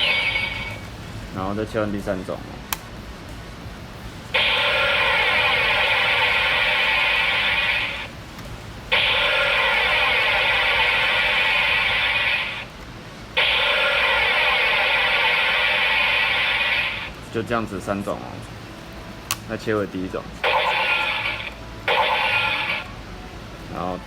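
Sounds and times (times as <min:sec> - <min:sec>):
electronic toy sound effect: 0:00.0 - 0:00.9, 0:04.4 - 0:08.1, 0:08.9 - 0:12.7, 0:13.4 - 0:17.1, 0:20.4 - 0:22.9.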